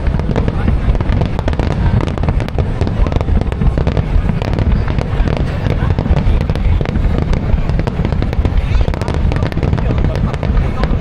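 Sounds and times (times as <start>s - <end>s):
fireworks booming: 0.0s - 11.0s
fireworks crackling: 0.0s - 11.0s.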